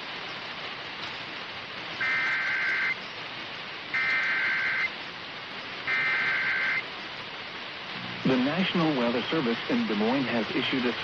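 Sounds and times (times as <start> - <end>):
radio hiss: 0.0 - 11.0
harsh electronic data tones: 2.0 - 3.0, 3.9 - 4.9, 5.8 - 6.8.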